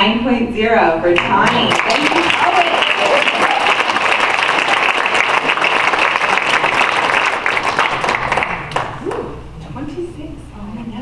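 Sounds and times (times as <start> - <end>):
audience applauding: 1.2 - 9.2.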